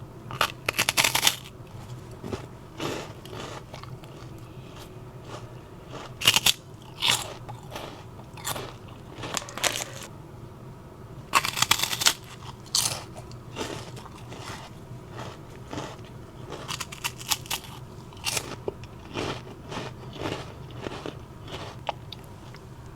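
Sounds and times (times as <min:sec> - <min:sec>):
chewing: 0:00.3 - 0:10.1, 0:11.4 - 0:22.7
cookies crunching: 0:00.3 - 0:10.1, 0:11.4 - 0:22.9.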